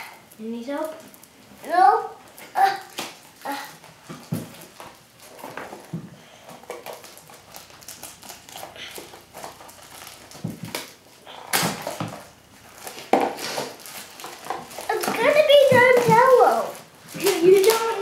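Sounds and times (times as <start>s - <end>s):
packaging rasp: 2.7s - 18.0s.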